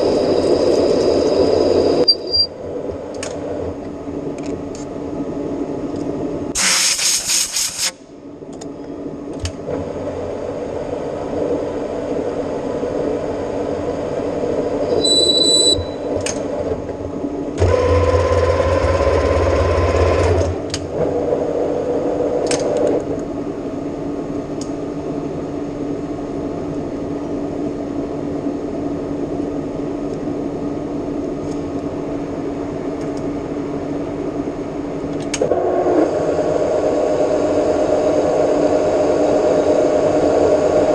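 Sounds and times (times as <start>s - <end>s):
high squeal: 0.0s - 2.6s, 14.8s - 16.1s
loud hiss: 6.6s - 8.0s.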